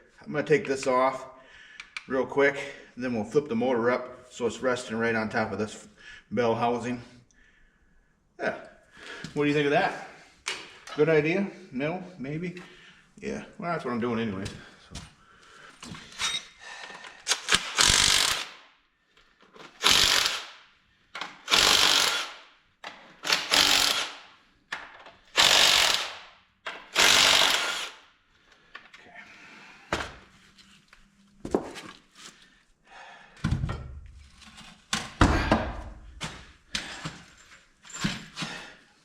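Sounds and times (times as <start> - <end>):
power tool undoing bolts: 17.2 - 18.6, 19.5 - 20.5, 21.1 - 24.2, 24.8 - 28.0.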